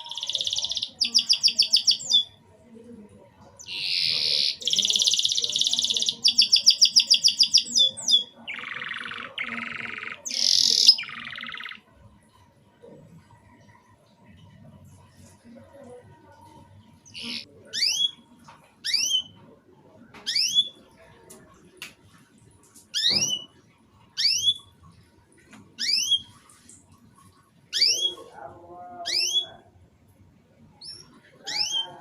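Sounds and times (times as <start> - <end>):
canary singing: 0.0 - 2.4, 3.4 - 11.9, 16.8 - 19.6, 20.2 - 20.9, 22.9 - 24.9, 25.8 - 26.4, 27.7 - 29.7, 30.8 - 32.0.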